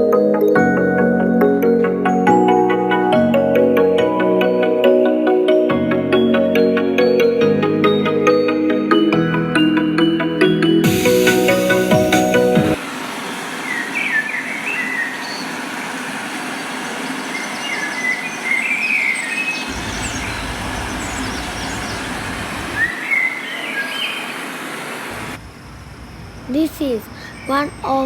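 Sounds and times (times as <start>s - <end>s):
small birds chirping: 13.3s - 25.2s, 26.0s - 28.0s
low rumble: 19.7s - 22.9s
steady rushing noise: 19.7s - 23.0s.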